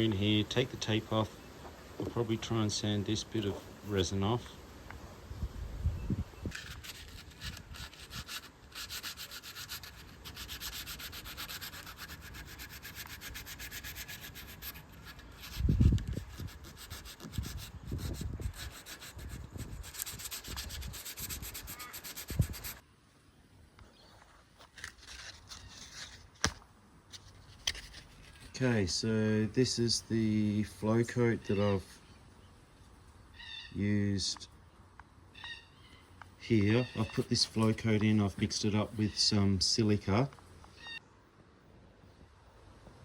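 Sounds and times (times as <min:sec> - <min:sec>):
sandpaper rubbing on resin: 0:06.5 - 0:22.8, 0:25.0 - 0:26.3.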